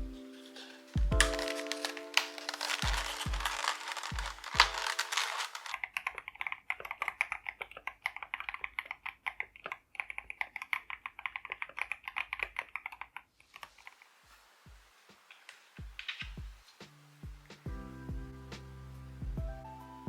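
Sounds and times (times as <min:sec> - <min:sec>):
mechanical keyboard typing: 0:01.1 - 0:13.3.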